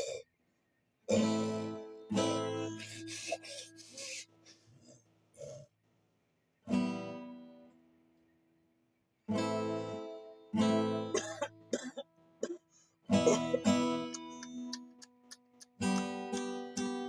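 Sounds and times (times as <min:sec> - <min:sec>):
acoustic guitar chords ringing: 0:01.1 - 0:03.2, 0:09.3 - 0:12.4, 0:13.1 - 0:17.0.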